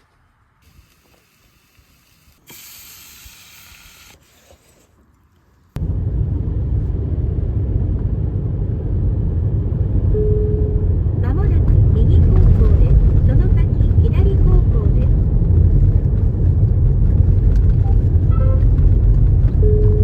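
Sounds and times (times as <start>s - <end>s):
short hiss: 0.6s - 5.0s
car rumbling on the move: 5.8s - 20.0s.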